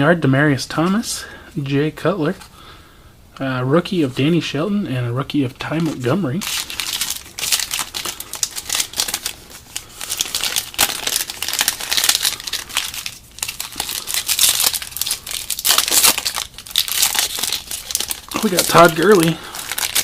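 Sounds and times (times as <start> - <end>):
wrapper crinkling and tearing: 5.7 - 20.0.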